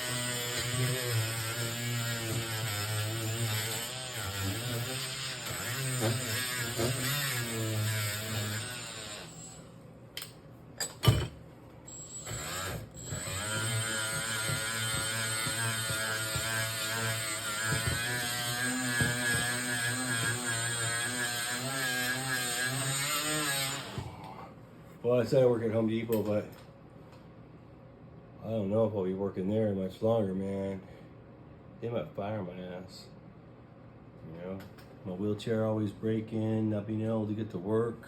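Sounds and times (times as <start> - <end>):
handheld power tool running: 0.0 - 9.6, 11.9 - 24.1.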